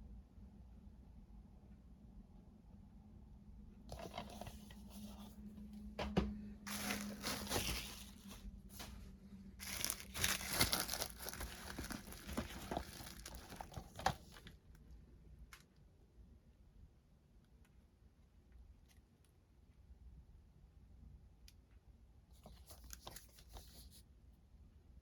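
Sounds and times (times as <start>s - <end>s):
packaging crinkling and tearing: 6.7s - 8.9s, 9.6s - 14.5s.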